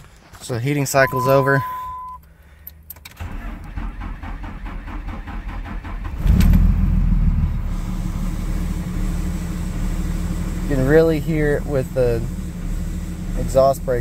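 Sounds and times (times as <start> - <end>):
diesel engine cranking and starting: 1.2 - 14.0
rough engine idle: 7.5 - 14.0.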